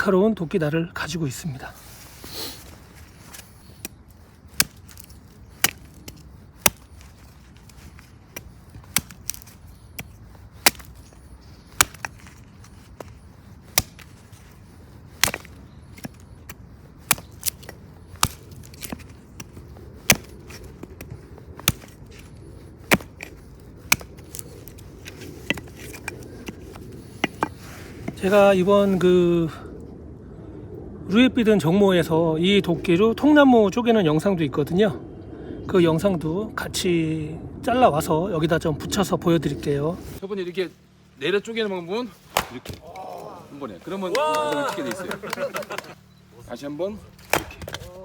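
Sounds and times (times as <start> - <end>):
axe chopping into wood: 3.8 - 7.1, 8.4 - 11.1, 11.7 - 12.4, 13.7 - 14.2, 15.2 - 27.6, 42.3 - 43.1, 47.2 - 48.0.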